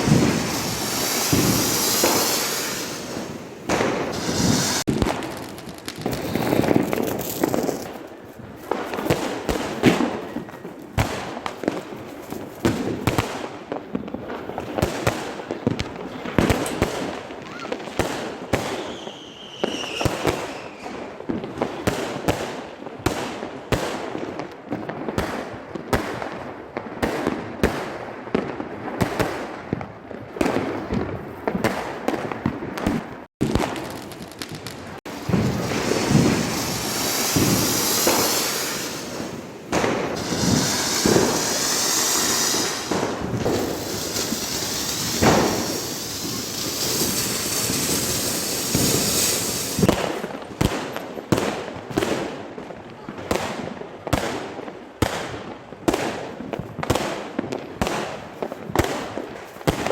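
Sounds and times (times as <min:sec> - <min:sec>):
firework whistling glide: 0:00.0 - 0:05.5, 0:35.0 - 0:50.0
firecrackers bangs and crackles: 0:00.0 - 0:59.9.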